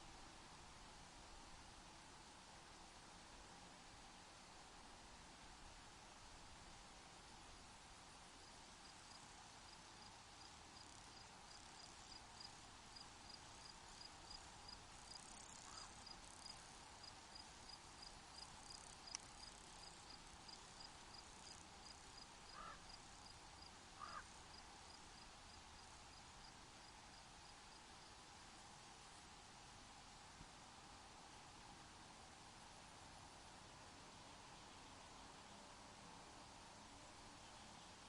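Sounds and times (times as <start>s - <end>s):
faint steady hiss: 0.0s - 38.0s
faint low animal calls: 15.3s - 16.0s, 22.5s - 22.9s, 24.0s - 24.4s.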